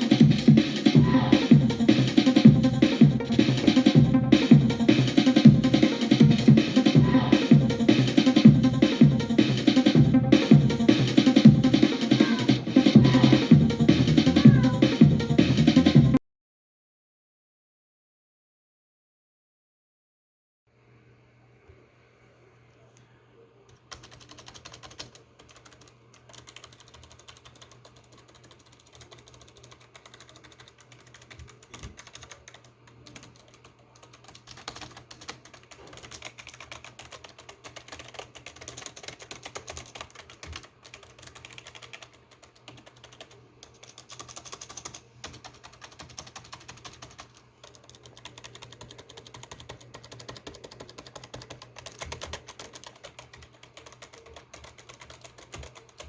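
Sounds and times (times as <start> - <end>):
rapid keyboard typing: 0.0 - 6.9, 23.9 - 56.0
steady low hum: 0.0 - 16.2.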